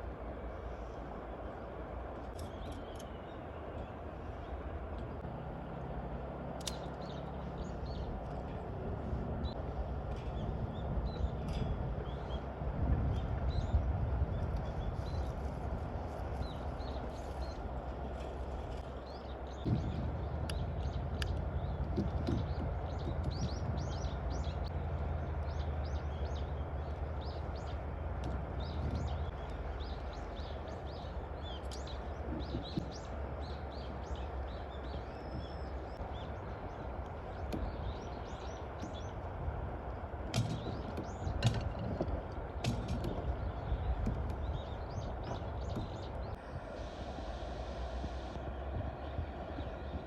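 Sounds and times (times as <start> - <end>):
low background rumble: 0.0 - 50.0
small birds chirping: 13.1 - 39.4, 42.7 - 48.4.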